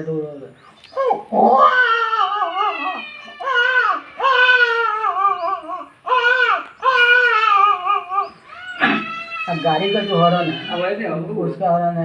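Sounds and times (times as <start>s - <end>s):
person imitating baby crying: 1.0s - 11.2s.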